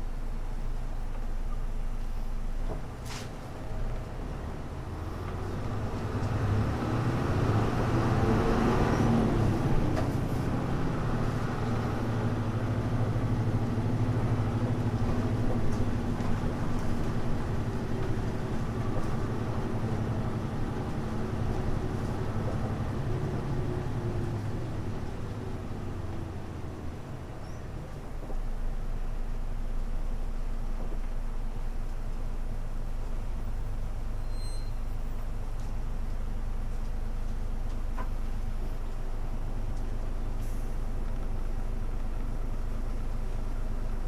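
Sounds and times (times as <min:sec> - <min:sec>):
diesel bus engine: 0:00.0 - 0:44.0.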